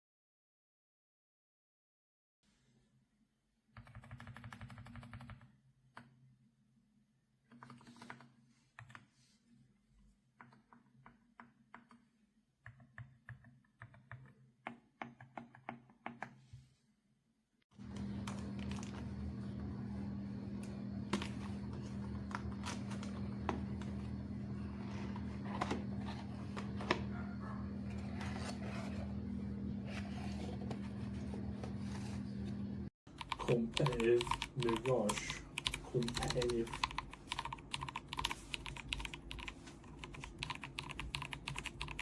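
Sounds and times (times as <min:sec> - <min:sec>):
mechanical keyboard typing: 0:03.8 - 0:05.4, 0:33.1 - 0:42.0
steady hum: 0:17.8 - 0:39.5.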